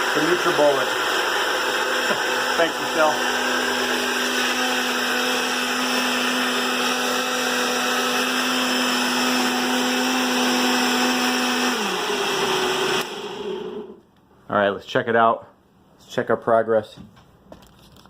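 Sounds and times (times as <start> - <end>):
blender motor grinding: 0.0 - 14.0.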